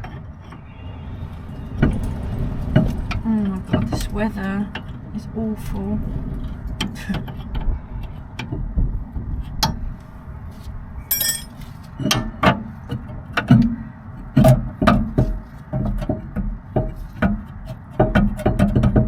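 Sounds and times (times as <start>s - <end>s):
wind buffeting microphone: 0.0s - 19.0s
metallic clinks and knocks: 11.1s - 11.6s.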